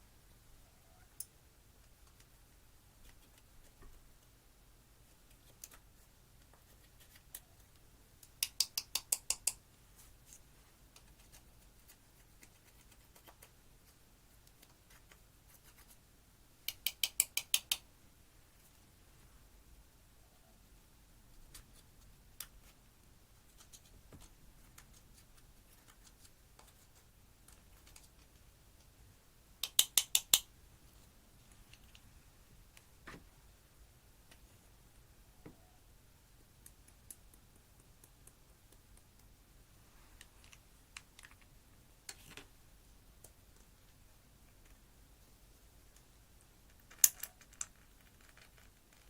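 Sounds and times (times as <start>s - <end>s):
loud sharp clicks: 29.6s - 30.5s.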